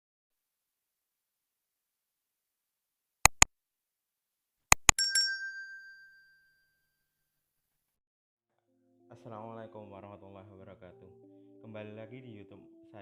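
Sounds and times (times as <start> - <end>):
sharp clicks: 3.3 - 3.5, 4.7 - 5.0
bell-like ding: 4.9 - 6.8.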